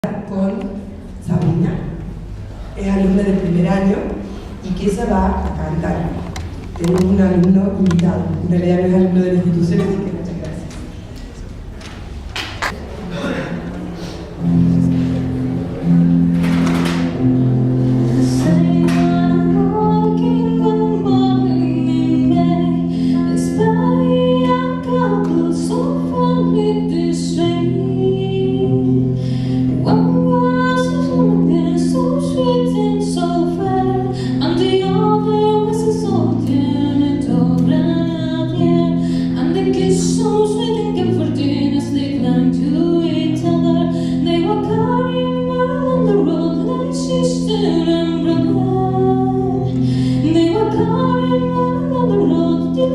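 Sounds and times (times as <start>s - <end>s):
woman singing with vibrato: 17.9s - 52.9s.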